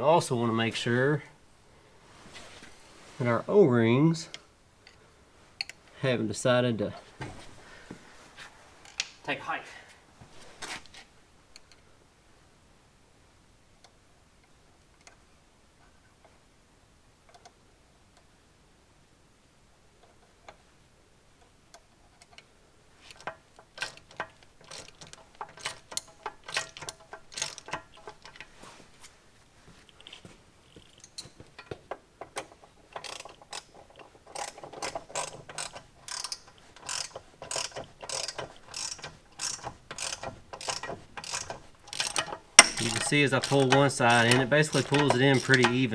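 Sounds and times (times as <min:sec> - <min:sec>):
ratchet wrench clicking: 0:23.1 - 0:28.4, 0:32.9 - 0:45.8.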